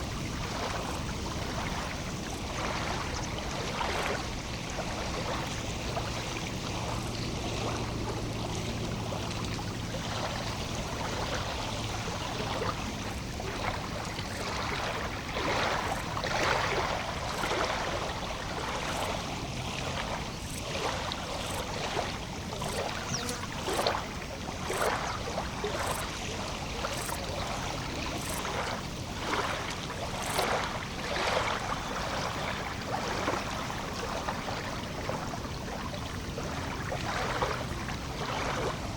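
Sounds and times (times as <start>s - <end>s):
water lapping at shore: 0.0s - 38.9s.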